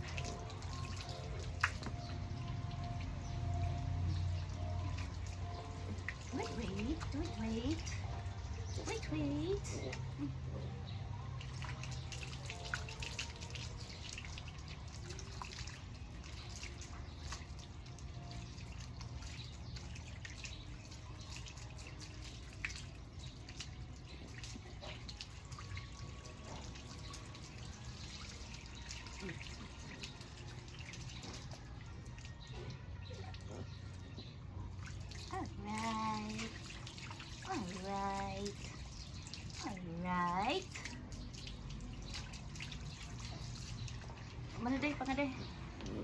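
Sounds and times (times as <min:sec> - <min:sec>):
water dripping and trickling: 0:00.0 - 0:46.0.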